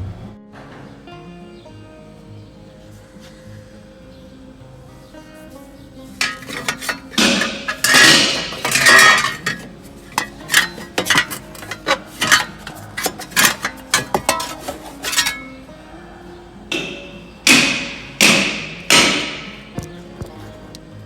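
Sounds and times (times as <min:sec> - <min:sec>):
clattering rattles: 0:06.2 - 0:15.7
metal tools clinking: 0:06.2 - 0:15.7.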